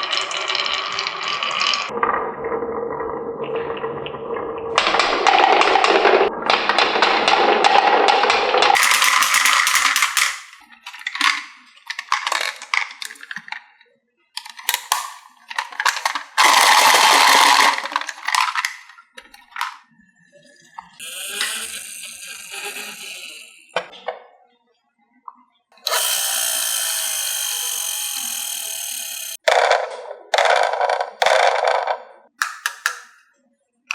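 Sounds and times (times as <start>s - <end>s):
marbles rolling and clattering: 4.8s - 13.6s, 14.4s - 19.8s, 20.8s - 23.9s, 25.9s - 33.2s.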